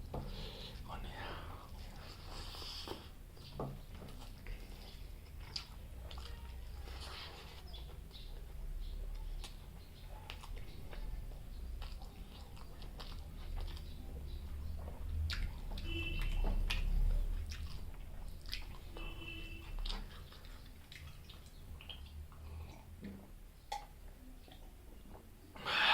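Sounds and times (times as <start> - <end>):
chewing and biting food: 1.7 - 23.9.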